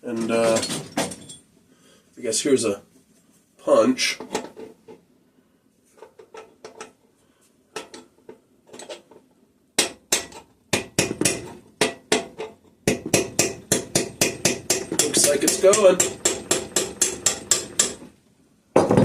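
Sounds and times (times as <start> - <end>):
hammer tapping metal punch: 9.8 - 18.0.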